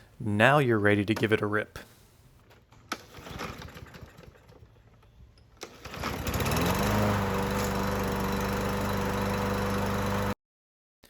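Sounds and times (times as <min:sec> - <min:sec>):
mower engine pull-started: 0:02.4 - 0:10.4
mower engine running: 0:05.6 - 0:10.4.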